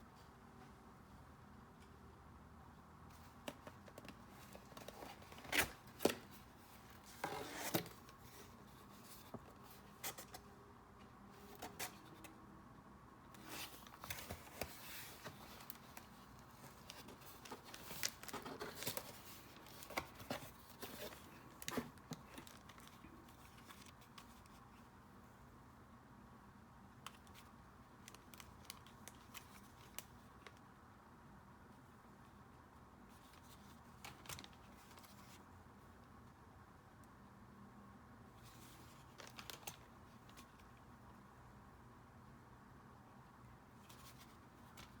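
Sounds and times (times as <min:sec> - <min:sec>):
packaging rustling and crinkling: 0:13.4 - 0:24.2.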